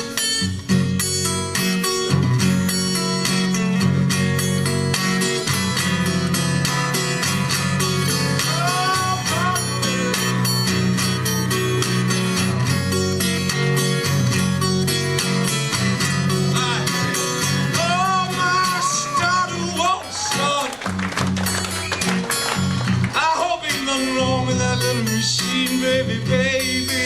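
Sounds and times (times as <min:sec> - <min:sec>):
guitar playing country blues: 0:00.0 - 0:27.0
thumping bass line: 0:00.5 - 0:21.6.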